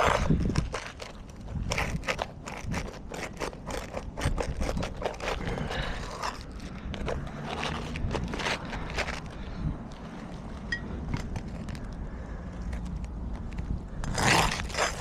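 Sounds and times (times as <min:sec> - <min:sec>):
roof shingles scraping and crackling: 0:00.0 - 0:09.5, 0:14.0 - 0:15.0.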